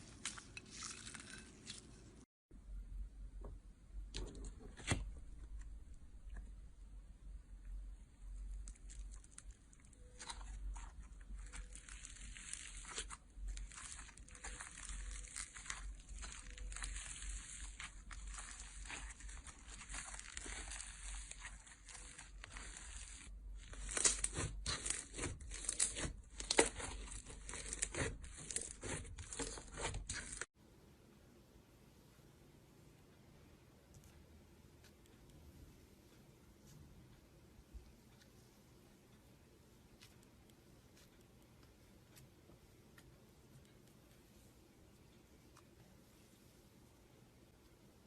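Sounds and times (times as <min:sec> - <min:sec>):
knife cutting soap crunching: 0:10.0 - 0:30.5.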